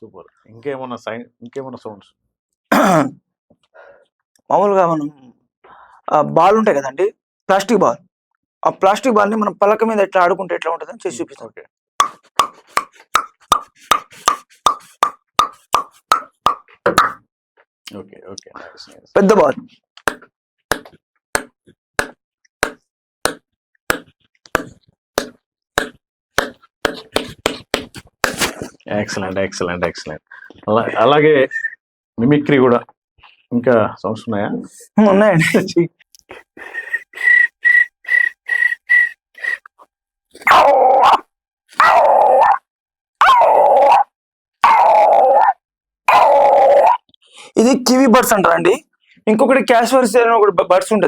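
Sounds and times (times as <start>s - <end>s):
mouth clicks mimicking bouncing ball: 12.0s - 17.2s, 20.0s - 28.6s, 36.2s - 39.8s
person mimicking bird calls: 36.2s - 39.8s.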